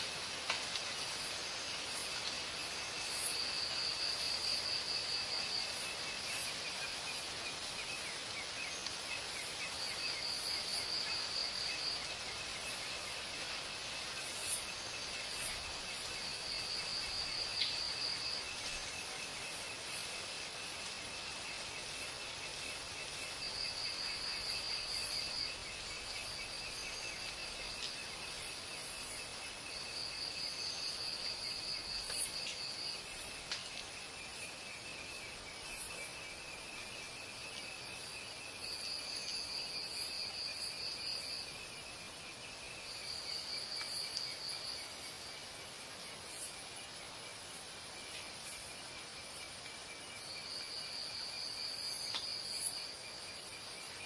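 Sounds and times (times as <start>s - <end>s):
insects trilling: 0.0s - 54.0s
faint ticks: 0.3s - 1.1s, 8.7s - 9.2s, 17.5s - 17.8s, 26.2s - 29.2s, 32.0s - 34.0s, 52.0s - 52.8s.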